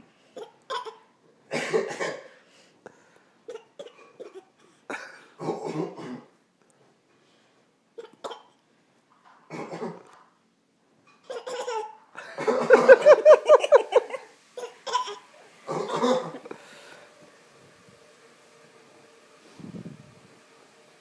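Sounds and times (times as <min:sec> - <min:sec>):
baby coughing: 0:00.4 - 0:02.4, 0:03.5 - 0:06.3, 0:08.0 - 0:08.6, 0:09.5 - 0:10.1, 0:11.3 - 0:12.7, 0:14.6 - 0:16.5
adult coughing: 0:01.5 - 0:02.4, 0:03.5 - 0:06.3, 0:09.5 - 0:10.1, 0:15.7 - 0:16.5
rapid laughter: 0:12.2 - 0:14.3.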